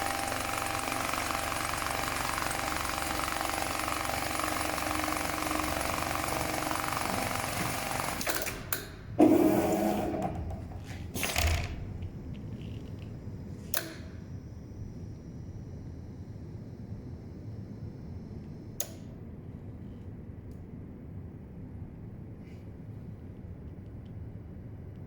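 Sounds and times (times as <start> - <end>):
sewing machine stitching: 0.0 - 11.8.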